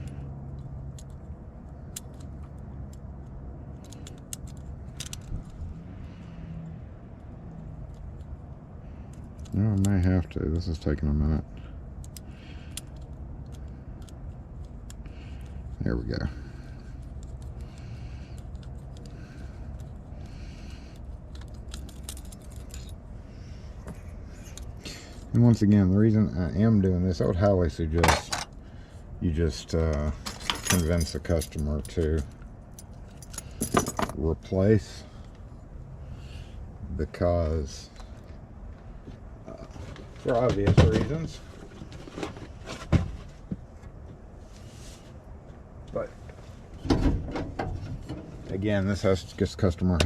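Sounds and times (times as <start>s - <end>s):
metallic clicks from lock parts: 0.0s - 5.6s, 20.9s - 23.0s, 29.9s - 34.2s
steady low hum: 0.0s - 50.0s.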